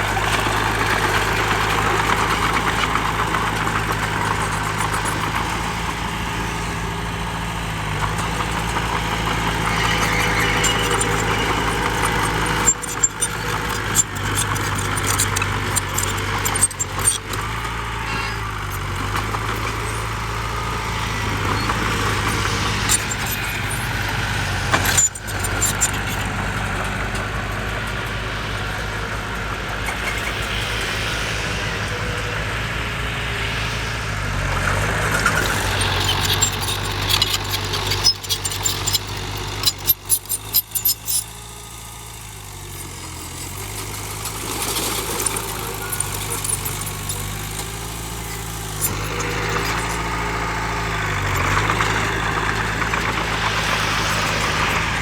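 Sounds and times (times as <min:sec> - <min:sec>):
heavy diesel machinery running: 0:00.0 - 0:55.0.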